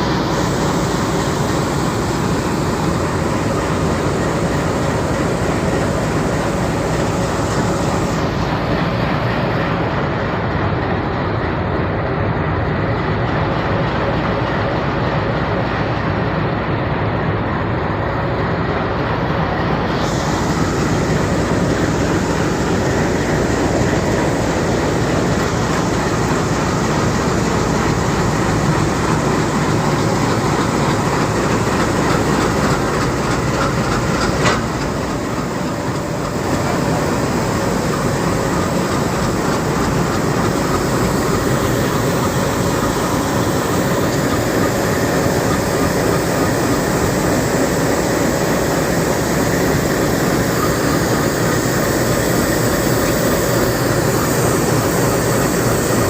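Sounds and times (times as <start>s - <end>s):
train rumbling past: 0.0s - 56.0s
wheels clattering over rail joints: 19.4s - 56.0s.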